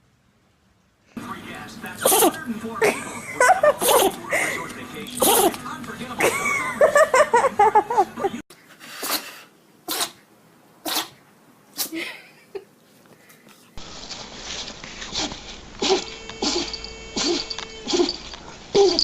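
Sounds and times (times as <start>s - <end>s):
puppy sneezing: 2.0s - 2.4s, 3.7s - 4.2s, 5.2s - 5.6s, 8.9s - 12.0s, 15.0s - 19.0s.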